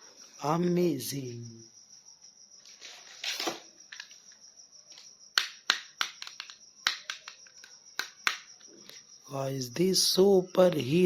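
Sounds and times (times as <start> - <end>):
faint high-pitched hiss: 0.0 - 5.2
plastic toys clicking: 5.4 - 8.6.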